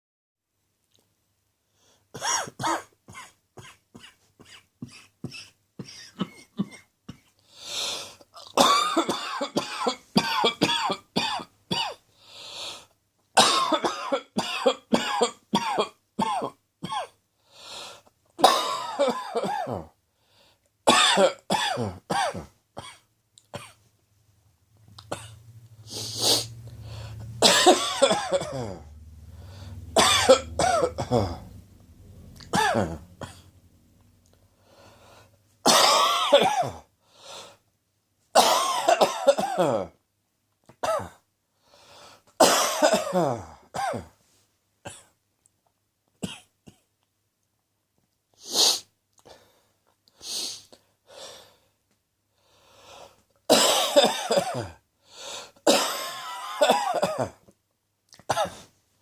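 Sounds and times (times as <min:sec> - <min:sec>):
man coughing: 0:02.2 - 0:07.3, 0:08.4 - 0:12.0, 0:13.4 - 0:17.2, 0:18.4 - 0:19.9, 0:20.9 - 0:23.0, 0:25.0 - 0:25.4, 0:27.2 - 0:28.9, 0:29.7 - 0:31.6, 0:32.4 - 0:33.5, 0:35.7 - 0:36.9, 0:38.4 - 0:40.0, 0:42.4 - 0:44.2, 0:53.5 - 0:54.8, 0:55.7 - 0:57.4, 0:58.2 - 0:58.7.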